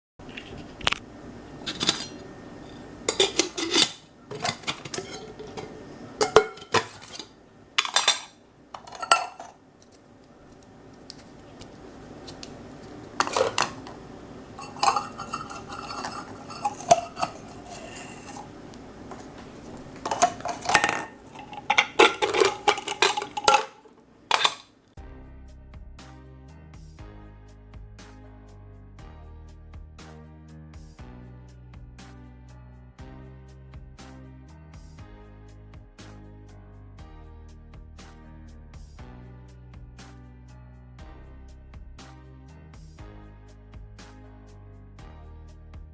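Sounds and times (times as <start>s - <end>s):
metal kettle and mugs clanking: 1.6s - 9.6s, 12.3s - 24.7s
background music: 3.0s - 9.5s, 12.1s - 23.7s, 24.3s - 45.9s.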